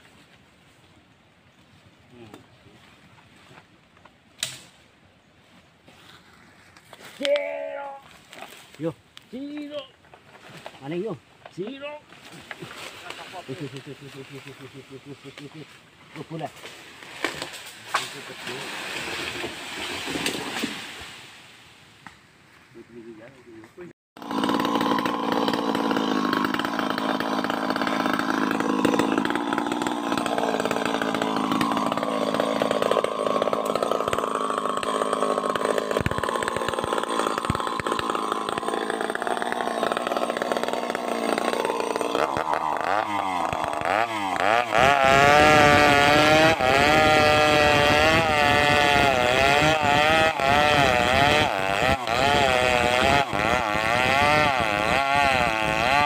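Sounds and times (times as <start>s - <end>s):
chainsaw cutting wood: 4.4s - 4.7s, 16.6s - 21.3s, 24.2s - 56.0s.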